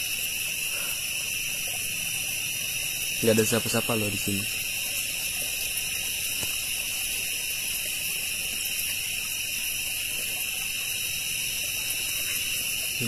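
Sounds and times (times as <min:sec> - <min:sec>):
crickets chirping at night: 0:00.0 - 0:13.0.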